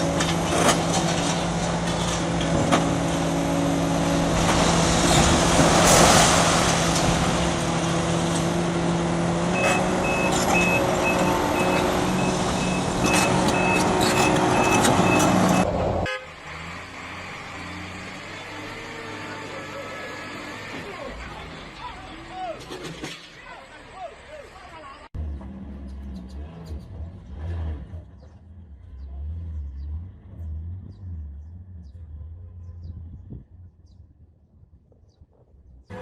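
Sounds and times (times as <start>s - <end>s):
knocks and clatter: 0.0s - 3.2s
heavy machine engine running: 0.0s - 22.3s
high repeating warning beep: 9.6s - 15.6s.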